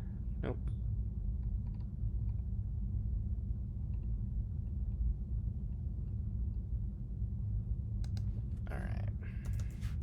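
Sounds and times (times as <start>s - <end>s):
faint keyboard clicks: 8.0s - 8.3s, 9.4s - 10.0s.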